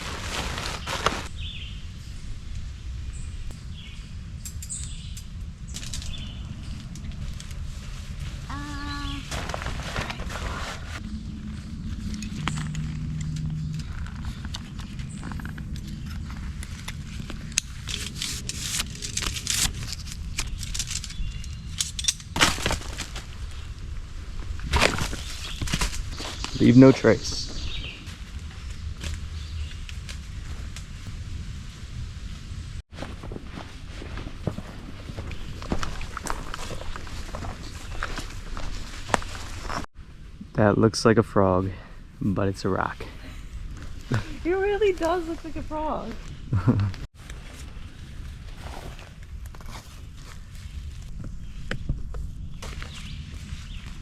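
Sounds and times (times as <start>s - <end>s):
dry leaves and twigs crunching: 0.0s - 1.6s, 5.7s - 26.7s, 32.9s - 39.9s, 52.5s - 54.0s
rustles: 0.0s - 3.4s, 4.3s - 40.4s, 42.8s - 54.0s
low rumble: 0.0s - 21.8s
birds chirping: 25.2s - 29.9s.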